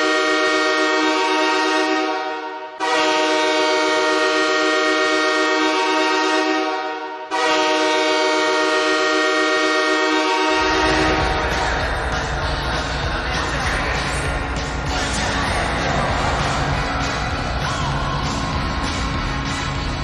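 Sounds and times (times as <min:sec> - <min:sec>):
air horn blasts: 0:00.0 - 0:12.4
music: 0:10.6 - 0:20.0.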